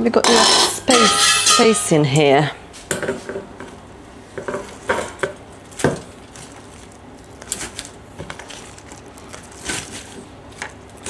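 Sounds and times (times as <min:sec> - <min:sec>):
metal pans and lids clinking: 0:00.1 - 0:03.8.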